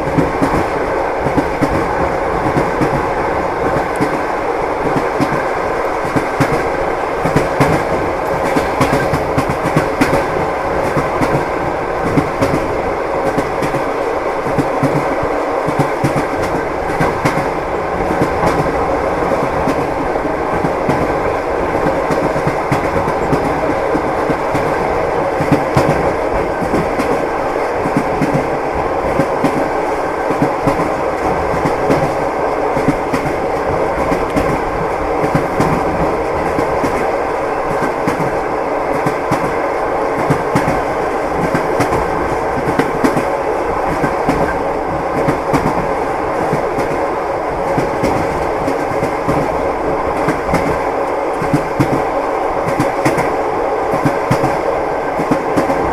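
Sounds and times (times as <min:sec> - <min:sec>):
train wheels clattering over rail joints: 0:00.0 - 0:32.2.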